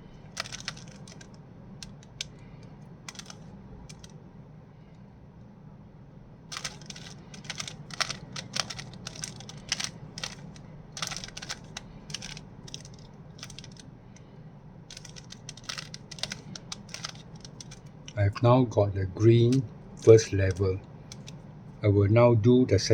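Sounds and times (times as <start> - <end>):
steady low hum: 0.0 - 22.9
plastic cube clicking: 0.3 - 2.4, 3.1 - 4.1, 6.5 - 13.8, 14.9 - 17.9, 20.5 - 21.4.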